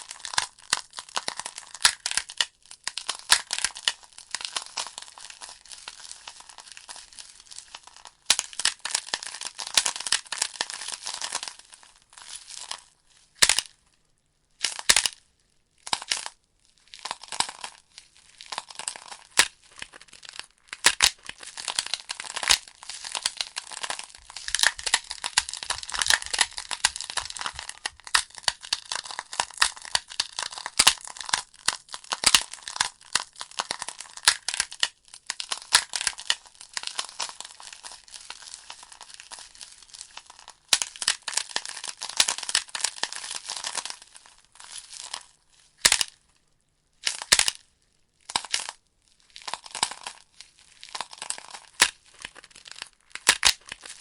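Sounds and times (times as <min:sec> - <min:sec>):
fireplace logs crackling: 0:24.2 - 0:28.5.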